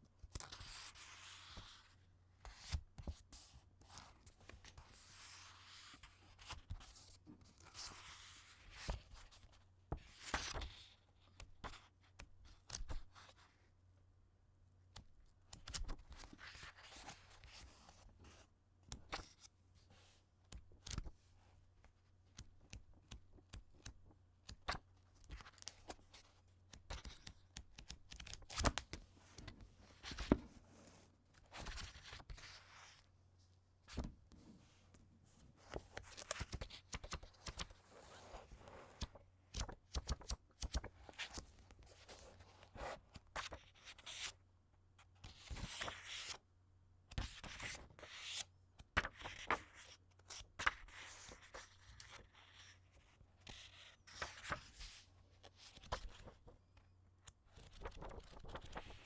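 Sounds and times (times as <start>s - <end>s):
book pages rustling and flapping: 22.4s - 33.0s, 33.9s - 44.2s, 49.0s - 49.9s, 57.6s - 59.0s.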